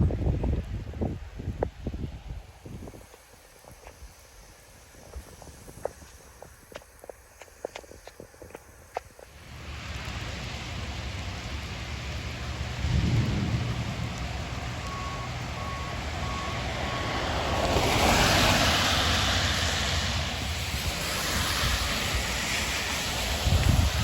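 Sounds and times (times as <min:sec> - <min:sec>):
storm wind buffeting microphone: 0:00.0 - 0:24.0
wind-driven rain hiss: 0:00.0 - 0:24.0.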